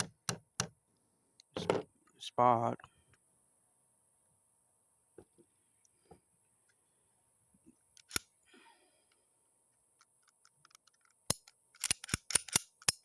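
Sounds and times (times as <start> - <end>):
pistol metal clicks: 10.2 - 13.0.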